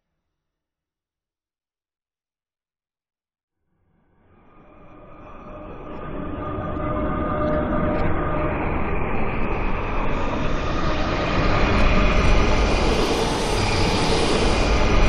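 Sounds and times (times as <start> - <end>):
rumbling wind rush: 9.6 - 15.0.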